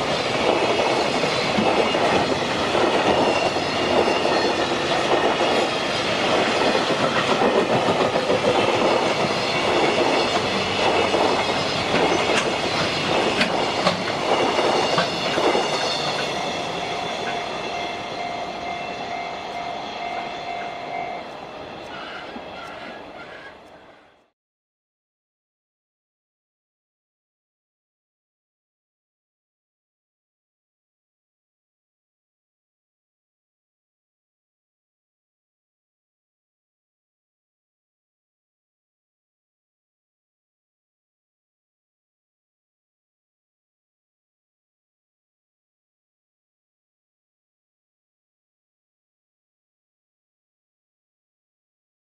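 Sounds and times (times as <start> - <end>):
train wagons clattering over rails: 0.0 - 24.2
steady ringing tone: 13.6 - 22.3.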